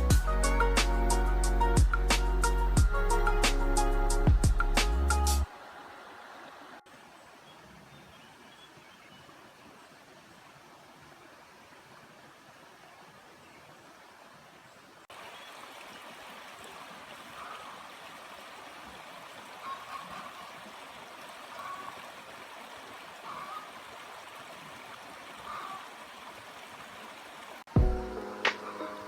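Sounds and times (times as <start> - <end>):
running water rushing: 3.1 - 29.0.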